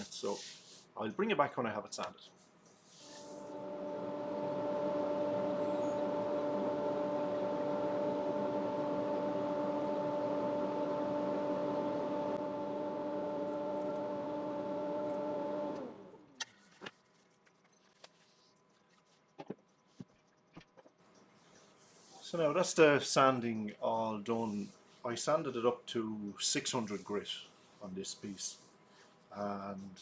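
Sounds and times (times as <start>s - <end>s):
electric motor humming: 3.3s - 16.3s.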